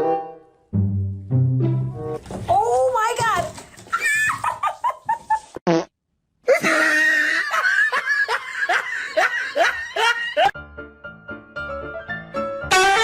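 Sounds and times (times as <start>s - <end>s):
music: 0.0s - 2.4s, 10.6s - 13.0s
laughing: 3.9s - 5.6s, 6.5s - 10.6s.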